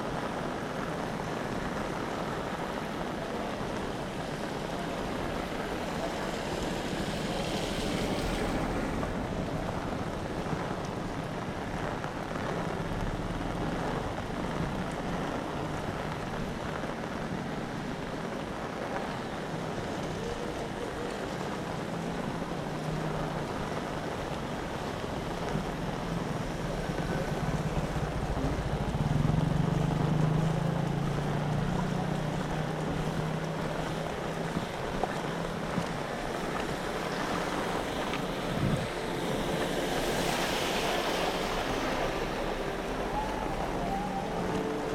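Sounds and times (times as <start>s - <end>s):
heavy rain: 0.0s - 44.9s
low engine hum: 22.4s - 44.9s
wind buffeting microphone: 32.9s - 44.9s.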